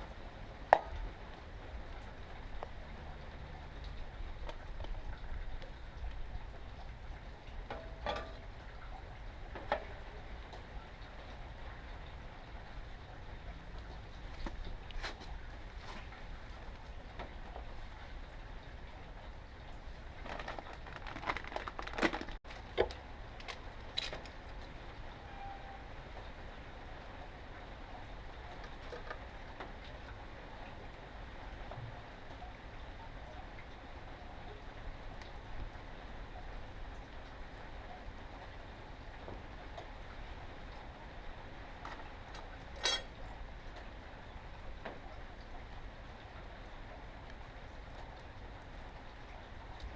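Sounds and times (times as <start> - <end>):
low steady rumble: 0.0 - 49.9
metal tools clinking: 42.8 - 43.1.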